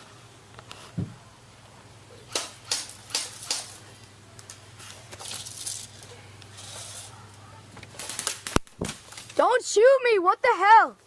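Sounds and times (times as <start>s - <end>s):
airsoft guns firing: 2.3s - 3.8s.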